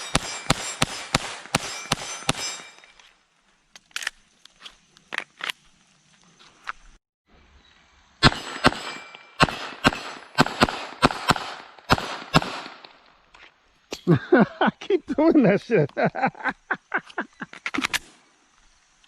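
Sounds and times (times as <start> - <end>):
gunshots: 0.0 - 2.8, 8.2 - 12.9.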